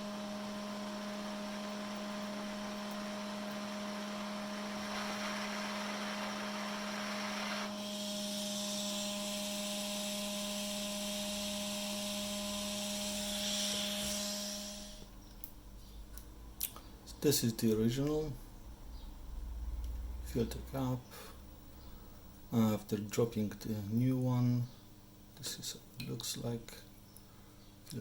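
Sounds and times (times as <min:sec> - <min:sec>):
electric fan machine humming: 0:00.0 - 0:28.0.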